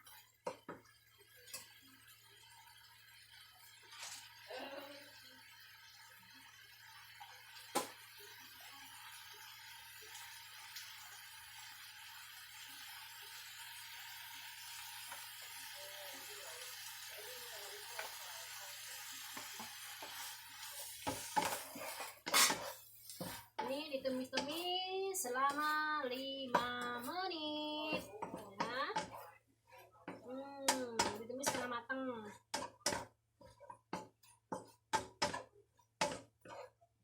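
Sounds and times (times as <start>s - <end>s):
food sizzling in a frying pan: 0.0s - 36.7s
utensils clattering against pan: 19.4s - 23.7s.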